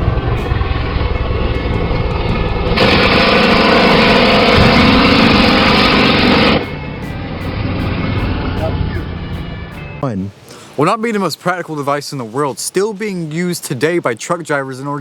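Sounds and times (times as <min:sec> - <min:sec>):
engine drone: 0:00.0 - 0:10.0
loud rushing noise: 0:00.0 - 0:10.0.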